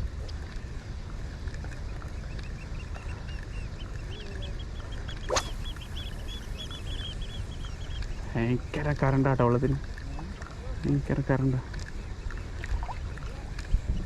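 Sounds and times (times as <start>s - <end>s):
low rumble of wind and water: 0.0s - 14.0s
short high bird calls: 2.8s - 8.2s
sharp rising sweep: 5.3s - 5.9s.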